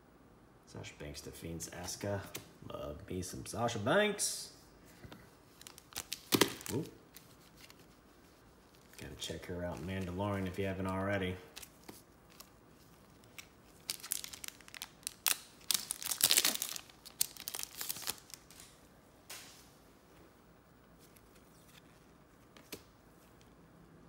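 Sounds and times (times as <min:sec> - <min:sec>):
wrapper tearing and crinkling: 0:05.5 - 0:07.9, 0:11.5 - 0:18.8.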